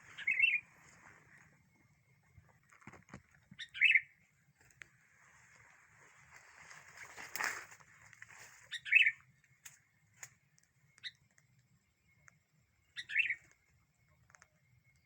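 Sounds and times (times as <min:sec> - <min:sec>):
bird calling: 0:00.0 - 0:01.2, 0:03.4 - 0:04.2, 0:08.5 - 0:09.3, 0:11.0 - 0:11.2, 0:12.9 - 0:13.6
bird chirps: 0:00.0 - 0:02.5, 0:03.3 - 0:04.8, 0:08.3 - 0:15.0
brief rustle: 0:06.6 - 0:07.8.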